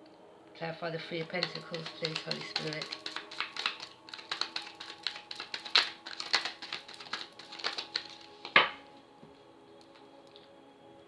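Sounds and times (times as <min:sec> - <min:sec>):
cards being shuffled by hand: 0:01.1 - 0:08.8.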